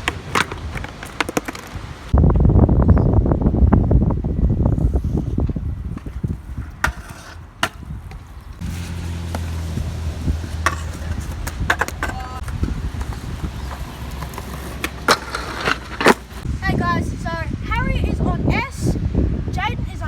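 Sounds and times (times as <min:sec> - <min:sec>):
board clacking on ground: 0:00.0 - 0:01.8, 0:10.6 - 0:16.4
skateboard wheels rolling on wet pavement: 0:00.0 - 0:02.2, 0:05.9 - 0:16.5.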